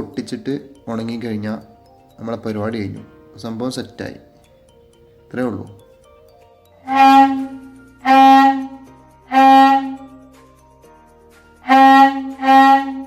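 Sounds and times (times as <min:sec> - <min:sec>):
plastic bottle horn honks: 0:06.9 - 0:08.7, 0:09.3 - 0:10.0, 0:11.7 - 0:13.0.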